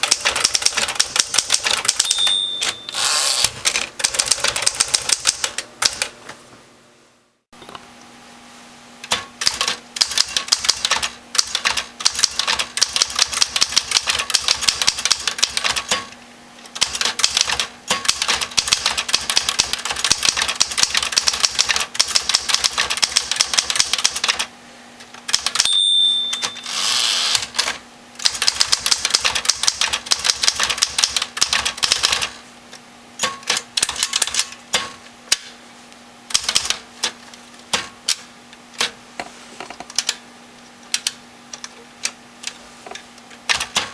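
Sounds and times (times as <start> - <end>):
typewriter keystroke clacks: 0.0 - 2.8, 3.6 - 6.1, 9.1 - 16.1, 16.7 - 24.5, 25.3 - 25.7, 27.6 - 32.3, 33.2 - 35.4, 36.3 - 38.2, 43.5 - 43.9
typewriter carriage return: 0.0 - 6.1, 25.3 - 32.3, 43.5 - 43.9
typewriter margin bell: 1.7 - 3.1, 25.5 - 27.1.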